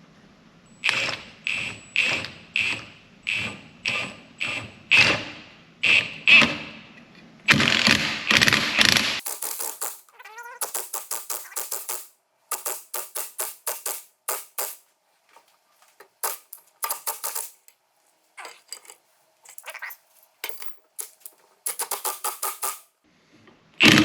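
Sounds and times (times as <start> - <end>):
ratchet wrench clicking: 9.2 - 14.8, 16.2 - 17.7, 20.5 - 22.9.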